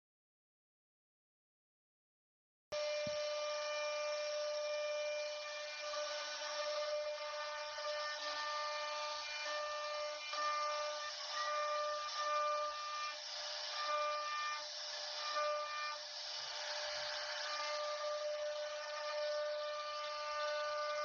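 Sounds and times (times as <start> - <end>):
cnc router whining: 2.8 - 21.0
cutting hiss: 2.8 - 21.0.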